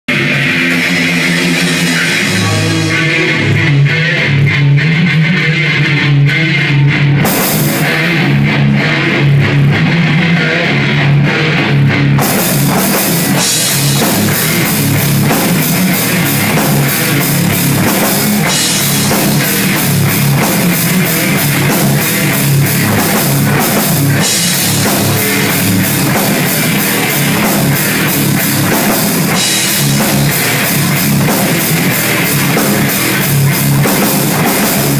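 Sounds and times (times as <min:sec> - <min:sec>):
heavy metal band playing: 0:00.1 - 0:34.9
cymbals crashing: 0:12.5 - 0:34.9.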